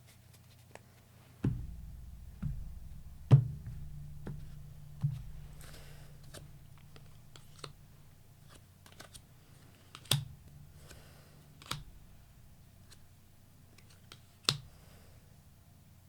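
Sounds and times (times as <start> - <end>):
soft rustling of cards: 0.0 - 2.5, 13.7 - 15.1.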